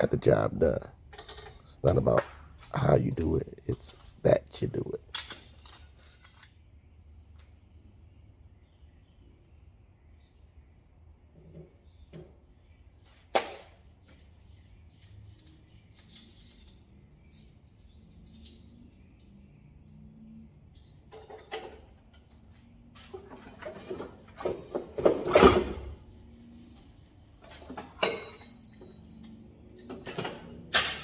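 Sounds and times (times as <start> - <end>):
metal bicycle parts clattering: 1.1 - 1.6, 5.1 - 6.5.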